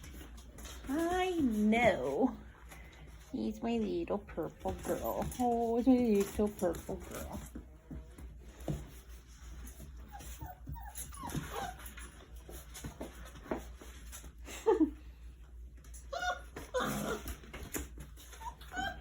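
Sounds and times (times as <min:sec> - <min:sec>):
puppies whimpering and yipping: 0:09.8 - 0:12.5, 0:16.0 - 0:19.0.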